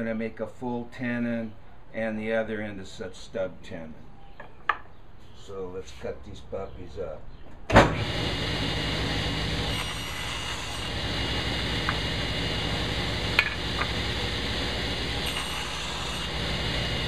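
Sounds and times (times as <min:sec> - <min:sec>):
table saw motor hum: 0:07.9 - 0:17.0.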